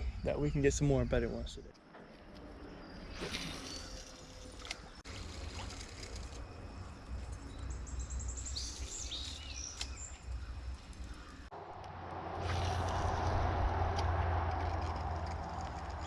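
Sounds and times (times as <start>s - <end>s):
bird singing trills and chirps: 6.4s - 11.5s
low rumble: 10.3s - 16.0s.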